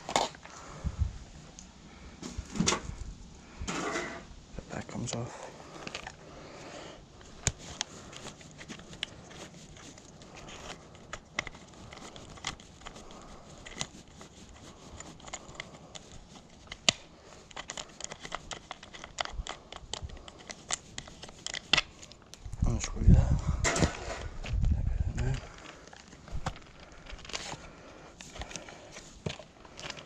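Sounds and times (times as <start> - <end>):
plastic and metal parts clicking: 5.0 - 6.2, 7.2 - 22.5, 25.2 - 30.0.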